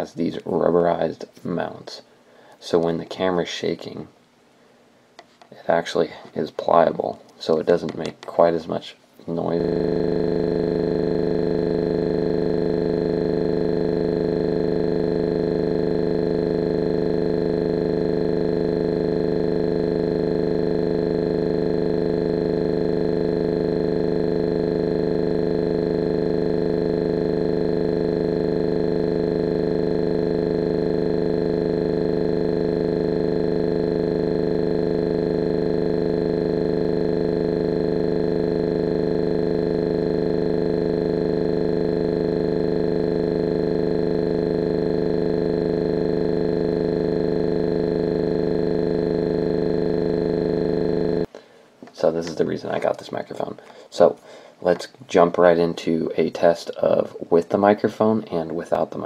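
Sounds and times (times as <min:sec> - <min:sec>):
loud electronic hum: 0:09.3 - 0:51.4.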